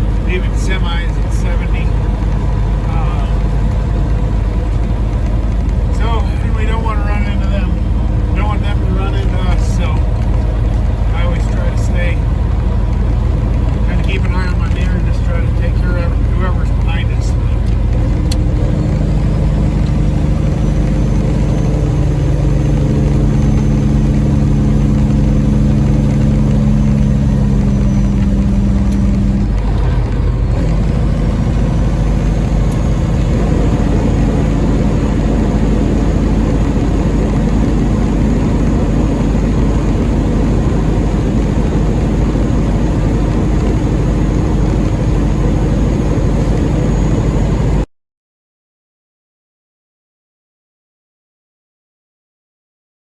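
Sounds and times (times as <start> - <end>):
truck diesel engine running: 0.0 - 47.9.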